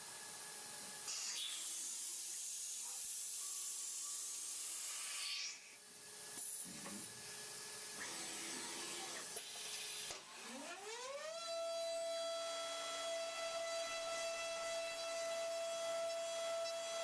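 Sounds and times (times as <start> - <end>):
hiss: 1.1 - 5.8.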